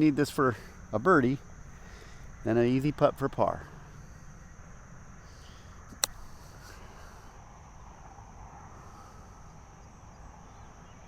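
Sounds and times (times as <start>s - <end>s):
high insect buzz: 3.7s - 11.0s.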